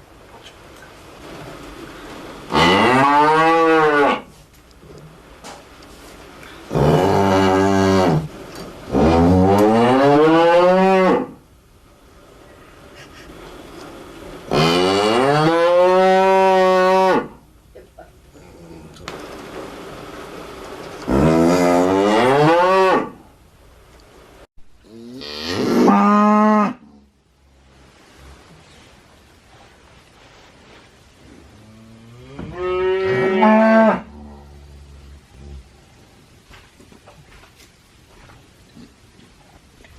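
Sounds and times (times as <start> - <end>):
cow mooing: 2.5 - 4.3, 14.5 - 17.3, 21.1 - 23.2, 24.9 - 27.1, 31.7 - 35.2.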